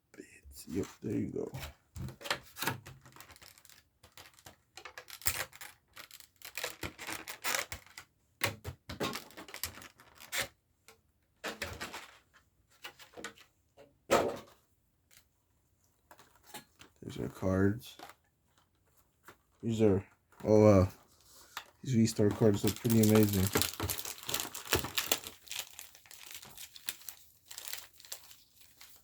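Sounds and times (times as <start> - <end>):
packaging tearing and rustling: 3.0 - 8.0, 21.5 - 29.0.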